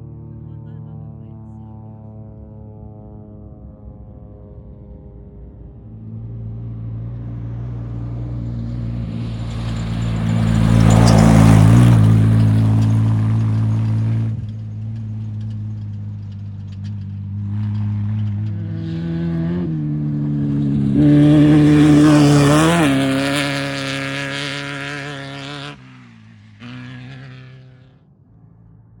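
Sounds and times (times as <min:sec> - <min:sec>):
off-road race engines: 0:00.0 - 0:29.0
tyre and gravel rush: 0:09.0 - 0:18.2.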